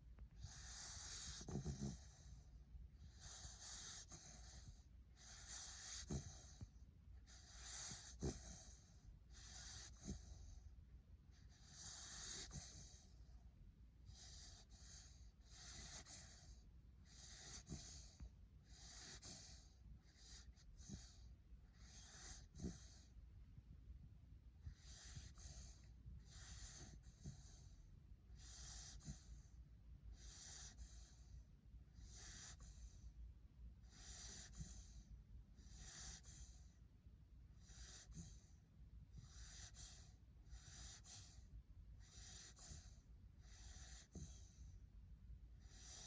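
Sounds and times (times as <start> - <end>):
puppy snoring breaths: 0.0 - 46.0
puppy snorting: 0.4 - 10.6, 11.4 - 13.2, 14.1 - 23.2, 24.7 - 27.8, 28.4 - 29.4, 30.1 - 31.3, 32.0 - 33.0, 33.8 - 36.7, 37.6 - 38.6, 39.2 - 44.7, 45.6 - 46.0.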